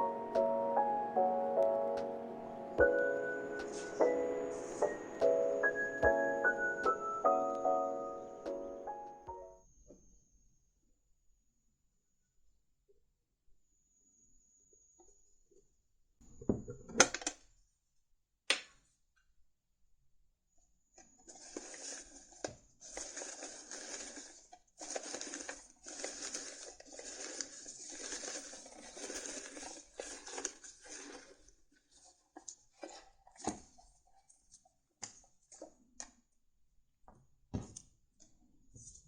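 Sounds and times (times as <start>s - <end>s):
cards rustling while shuffled: 21.3s - 31.4s.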